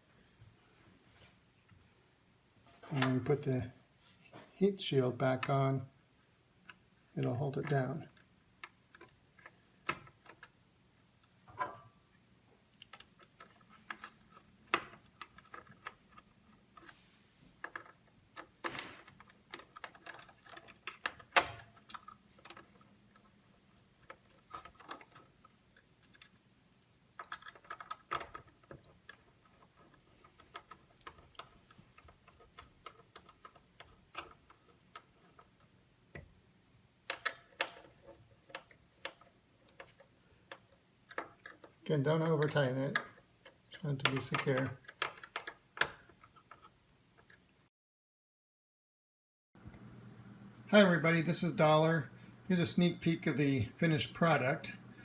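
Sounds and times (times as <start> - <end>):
metal parts clicking and tapping: 12.7 - 17.0, 17.6 - 23.3, 24.0 - 26.4, 27.1 - 36.3, 37.1 - 47.4
screwdriver screwing: 27.2 - 36.3.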